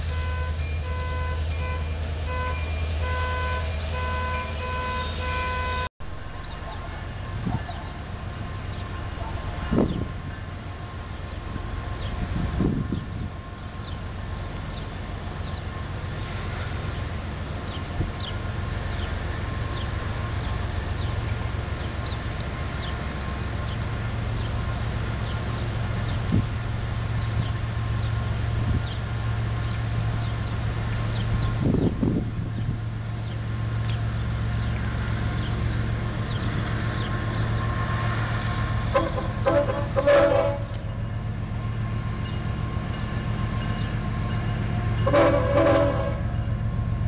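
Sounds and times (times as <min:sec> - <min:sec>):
locomotive air horn blasts: 0:00.0 - 0:05.9, 0:38.8 - 0:40.9, 0:44.9 - 0:46.4
locomotive engine rumble: 0:00.0 - 0:47.0
train running noise: 0:00.0 - 0:47.0.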